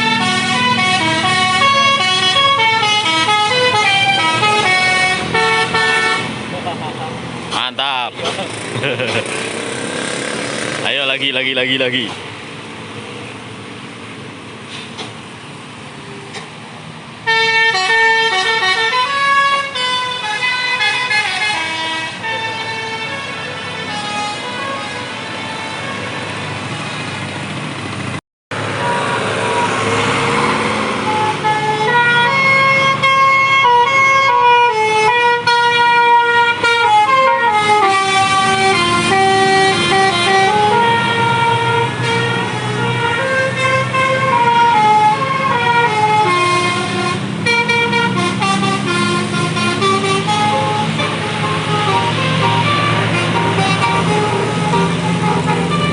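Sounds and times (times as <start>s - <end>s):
air horns playing melodic tunes: 0.0s - 6.4s, 17.2s - 26.4s, 31.0s - 55.9s.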